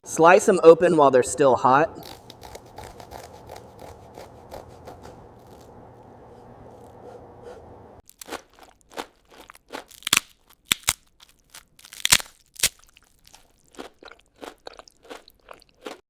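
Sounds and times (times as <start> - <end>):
crispy food crunching: 2.0 - 5.8, 8.0 - 16.0.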